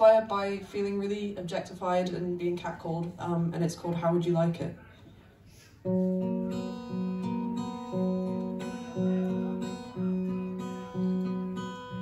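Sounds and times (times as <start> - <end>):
acoustic guitar strumming chords: 5.8 - 12.0.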